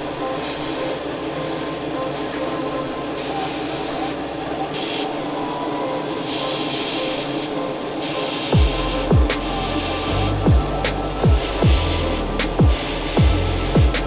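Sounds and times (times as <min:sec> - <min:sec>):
steady hum: 0:00.0 - 0:14.0
airbrush spraying hiss: 0:08.0 - 0:14.0.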